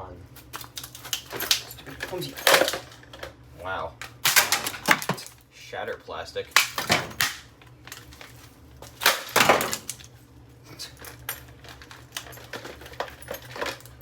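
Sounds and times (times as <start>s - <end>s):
broken plastic pieces rattling: 0.5s - 3.3s, 4.0s - 5.4s, 6.5s - 10.2s, 10.8s - 14.0s
plastic being smashed: 4.1s - 5.3s, 6.5s - 10.1s.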